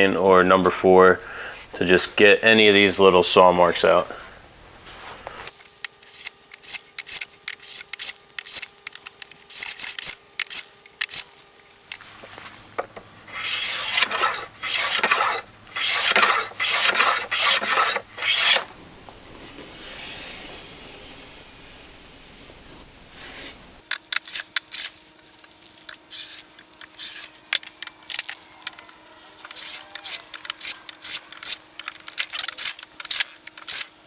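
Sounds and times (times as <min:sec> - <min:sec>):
hand plane shaving wood: 0:05.5 - 0:18.8, 0:24.1 - 0:34.0.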